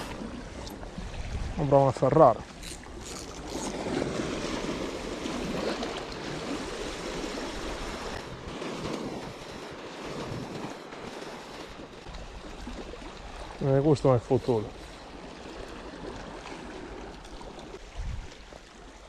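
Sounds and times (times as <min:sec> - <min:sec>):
surf washing against rocks: 0:00.0 - 0:18.9.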